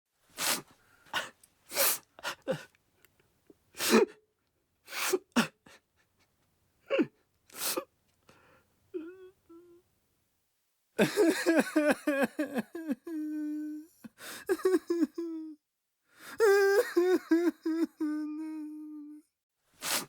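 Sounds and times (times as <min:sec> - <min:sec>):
sobbing gasps for breath: 0:00.4 - 0:02.8, 0:11.0 - 0:15.6, 0:16.2 - 0:19.2
man crying: 0:09.0 - 0:09.8, 0:11.0 - 0:15.6, 0:16.4 - 0:19.2.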